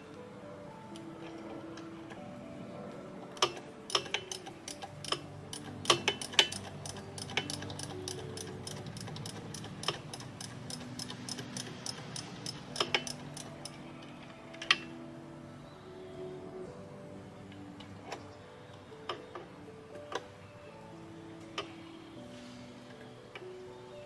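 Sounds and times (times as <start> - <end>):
background music with held notes: 0.0 - 24.0
hand ratchet clicking: 3.4 - 13.8
sharp metal clicks: 3.4 - 13.8.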